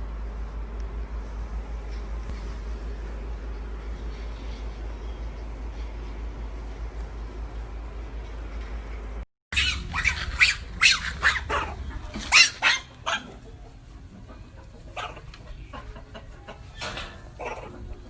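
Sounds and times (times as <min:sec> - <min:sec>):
dog barking: 0:09.6 - 0:13.4, 0:15.0 - 0:15.3.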